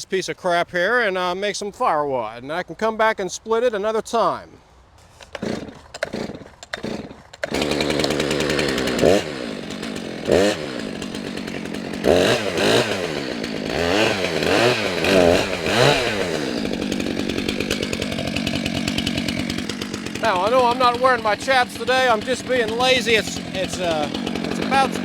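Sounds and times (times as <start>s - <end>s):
chainsaw pull-start knocks: 5.1s - 25.0s
chainsaw running and revving: 5.2s - 25.0s.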